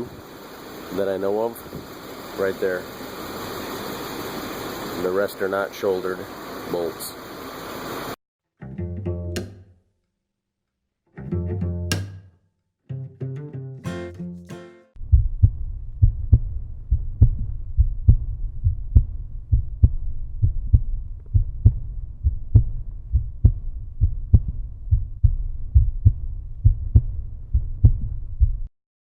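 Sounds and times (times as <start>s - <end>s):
low thumping beat: 15.0s - 28.7s.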